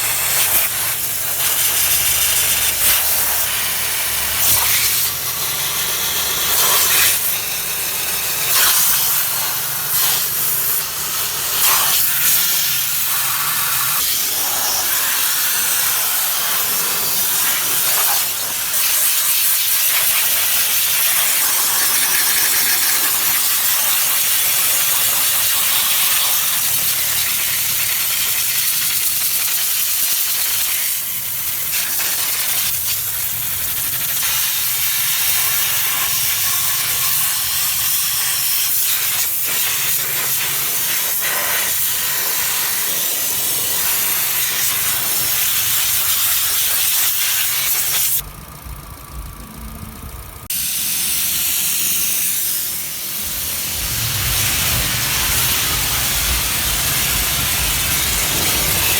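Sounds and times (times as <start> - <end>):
pressure washer spray hissing: 0.0 - 48.2, 50.5 - 58.9
low hum: 48.2 - 50.5, 52.6 - 58.9.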